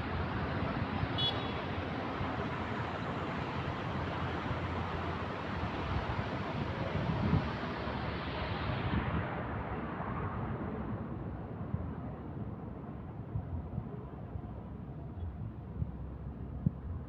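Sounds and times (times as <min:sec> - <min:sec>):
road traffic rushing: 0:00.0 - 0:10.5.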